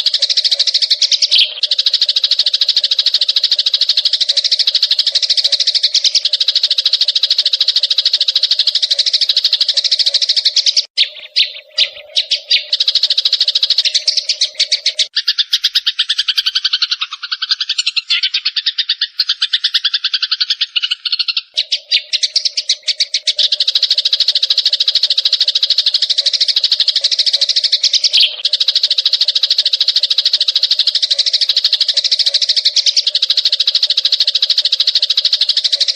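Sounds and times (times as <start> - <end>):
sparrows chirping: 0.0 - 35.9.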